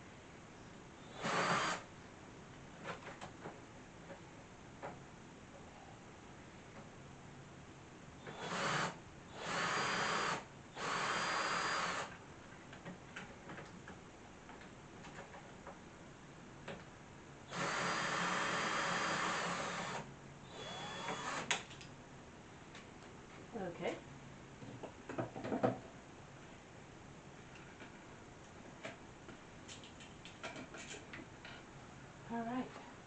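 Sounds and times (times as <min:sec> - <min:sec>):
power drill running: 0:01.1 - 0:01.8, 0:08.2 - 0:12.1, 0:17.5 - 0:21.5.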